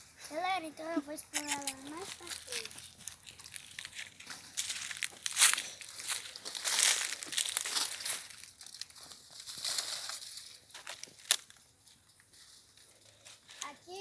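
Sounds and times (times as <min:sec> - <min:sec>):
footsteps crunching dry leaves: 0:01.3 - 0:11.5.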